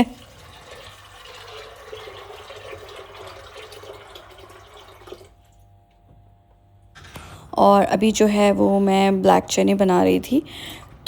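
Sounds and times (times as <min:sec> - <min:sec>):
water running from a tap: 0:00.0 - 0:05.4.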